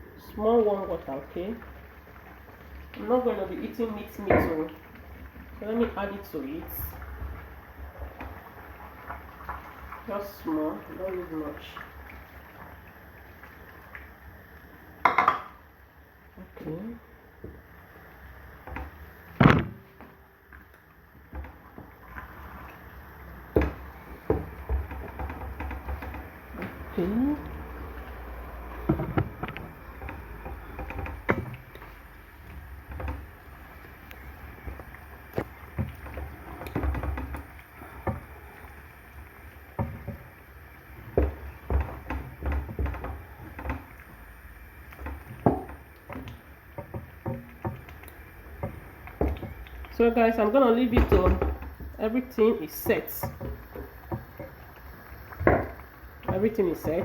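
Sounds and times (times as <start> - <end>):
cookware knocking and clattering: 15.0 - 15.6.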